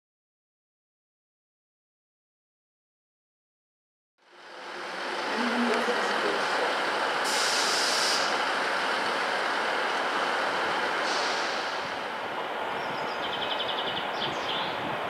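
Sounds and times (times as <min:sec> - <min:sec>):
train rumbling: 0:04.2 - 0:15.0
high hiss bursts: 0:07.2 - 0:08.4, 0:11.0 - 0:12.0.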